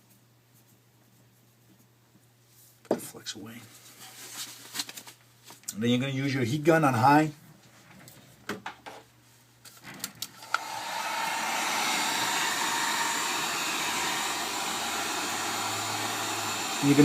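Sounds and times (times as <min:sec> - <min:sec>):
heat gun blowing air: 0:10.4 - 0:17.0.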